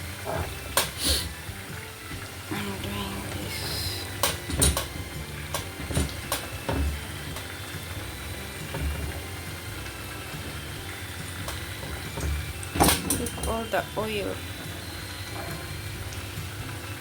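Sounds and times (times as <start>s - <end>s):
low mechanical hum: 0.0s - 17.0s
kitchen knocks and clinks: 4.2s - 7.5s, 11.5s - 13.6s.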